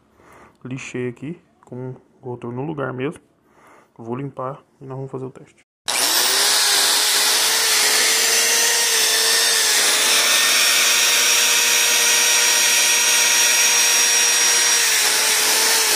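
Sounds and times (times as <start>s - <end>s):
electric motor whining: 5.9s - 15.9s.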